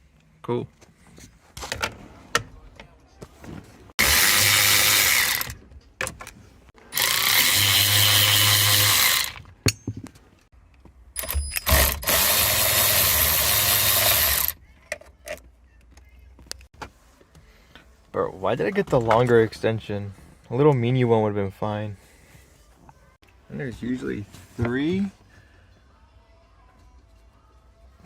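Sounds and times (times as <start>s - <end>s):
cordless power driver running: 4.0s - 5.6s, 6.9s - 9.4s, 11.7s - 14.5s.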